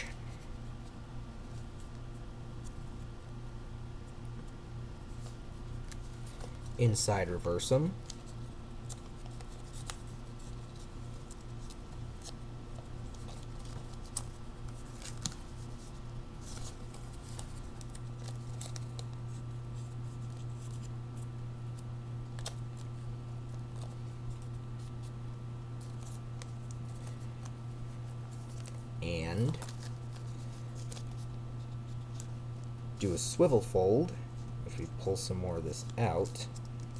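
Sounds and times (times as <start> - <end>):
steady low hum: 0.0 - 36.9
paper crinkling and folding: 8.0 - 25.2, 25.8 - 33.7, 34.4 - 36.9.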